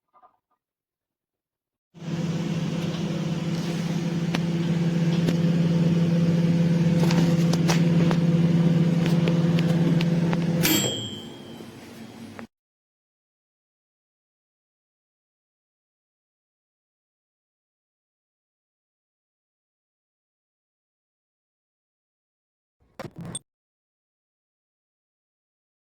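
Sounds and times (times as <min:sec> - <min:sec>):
microwave oven humming: 0:02.0 - 0:12.5
quiet whir: 0:02.0 - 0:12.5
short ringing tone: 0:10.6 - 0:11.9.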